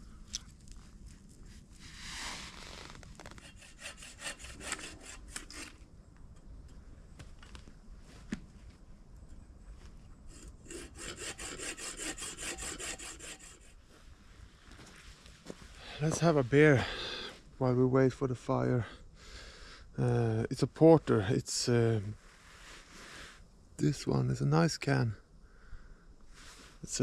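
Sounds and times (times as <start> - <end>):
hand saw cutting wood: 3.3 - 5.8, 10.3 - 13.8
wood being handled: 14.6 - 16.4.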